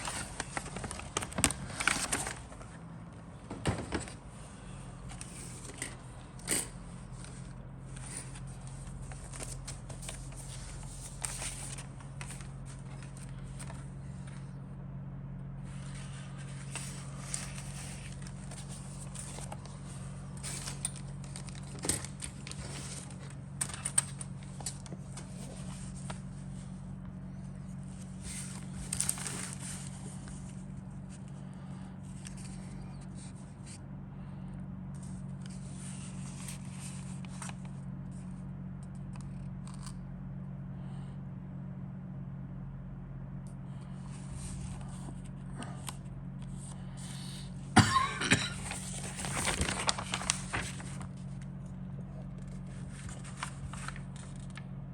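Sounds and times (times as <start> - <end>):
plastic and paper rustling: 0.0 - 14.6, 15.6 - 33.8, 35.0 - 38.3, 48.0 - 54.8
steady low hum: 0.0 - 54.9.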